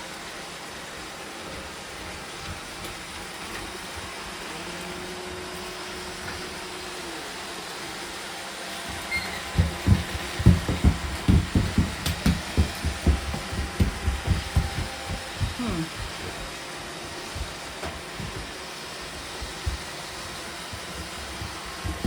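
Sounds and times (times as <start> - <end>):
robot vacuum cleaners humming: 0.0 - 22.0.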